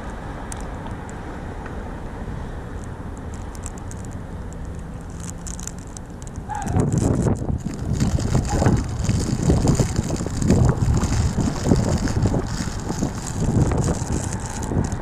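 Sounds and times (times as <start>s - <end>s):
wind buffeting microphone: 5.7s - 15.0s.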